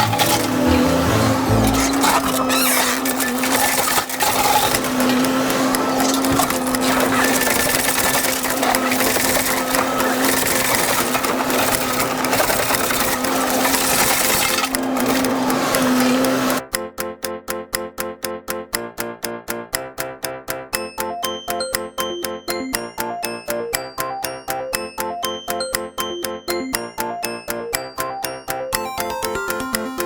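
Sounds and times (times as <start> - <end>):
excavator diesel engine droning: 0.0 - 16.6.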